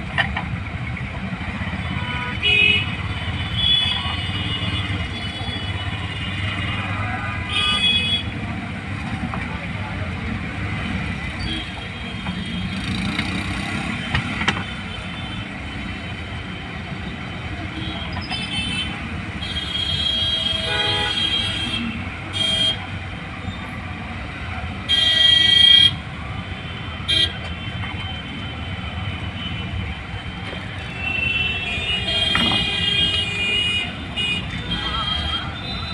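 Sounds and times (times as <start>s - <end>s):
road traffic rumble: 0.0s - 35.9s
vehicle horns tooting: 1.9s - 8.5s, 17.6s - 23.0s, 24.9s - 29.9s, 30.6s - 35.9s.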